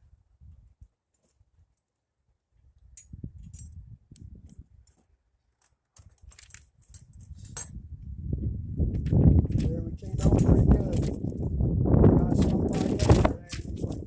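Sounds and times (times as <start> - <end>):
handling noise: 9.4 - 11.5, 12.2 - 14.0.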